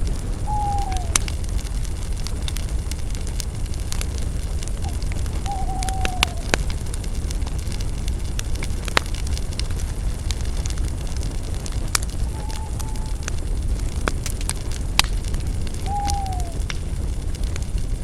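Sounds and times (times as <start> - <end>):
campfire crackling and popping: 0.0 - 18.0
low rumble: 0.0 - 18.0
faint falling whistling tone: 0.4 - 1.2, 4.8 - 6.5, 12.1 - 13.4, 15.8 - 16.6.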